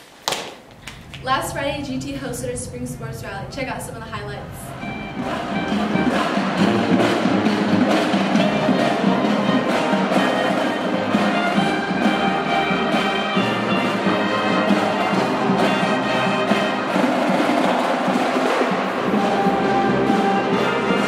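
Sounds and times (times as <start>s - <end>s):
music with brass and percussion: 4.8s - 21.0s.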